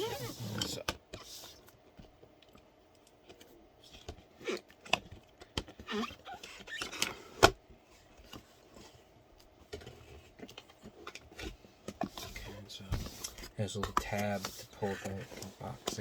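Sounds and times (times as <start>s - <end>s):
cardboard rustling and scraping: 0.0s - 1.6s, 5.8s - 16.0s.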